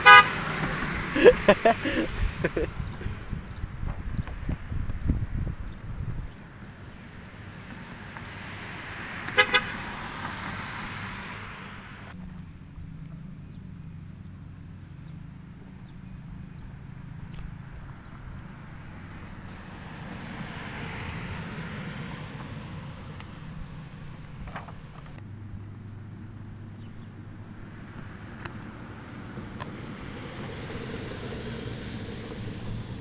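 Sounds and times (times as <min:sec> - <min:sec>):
car horn toots: 0:00.0 - 0:00.6, 0:09.3 - 0:10.0
car passing: 0:00.0 - 0:05.3, 0:05.9 - 0:33.0.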